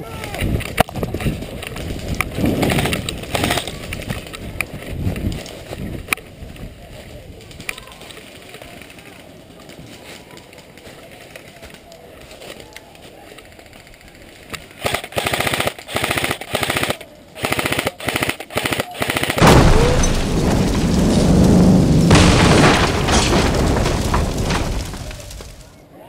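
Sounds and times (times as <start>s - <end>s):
airsoft guns firing rapid clicks: 14.8s - 19.4s.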